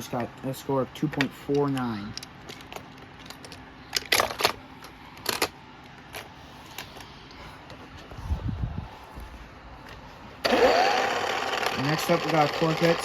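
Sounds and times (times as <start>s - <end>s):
toy cars clicking and clattering: 10.5s - 13.0s.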